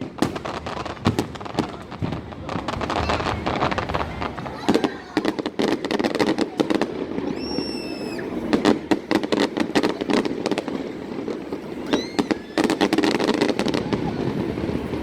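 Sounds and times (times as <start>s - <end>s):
fireworks bangs and crackling: 0.0s - 15.0s
long high firework whistle: 2.8s - 10.0s, 10.6s - 15.0s
short rising whistles: 7.3s - 8.4s, 11.8s - 12.8s.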